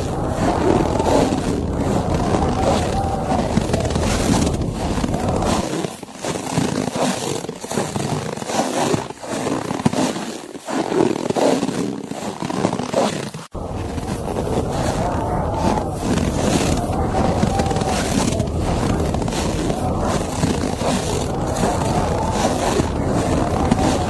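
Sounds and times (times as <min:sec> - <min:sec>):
blizzard wind: 0:00.0 - 0:05.7, 0:13.6 - 0:24.0.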